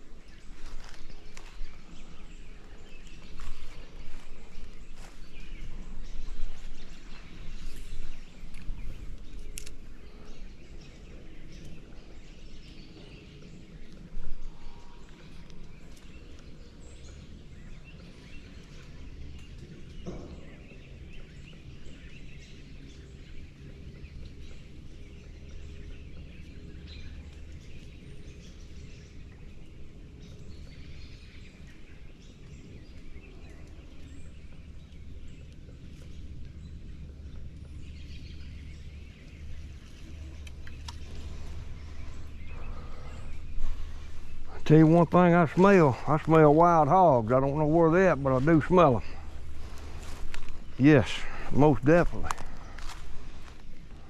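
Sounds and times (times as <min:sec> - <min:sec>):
birds chirping: 0:00.0 - 0:54.0
steady low rumble: 0:00.0 - 0:54.0.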